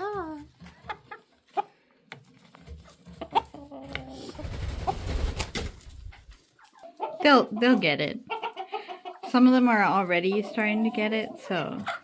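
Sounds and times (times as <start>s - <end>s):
chickens clucking: 0.0s - 12.0s.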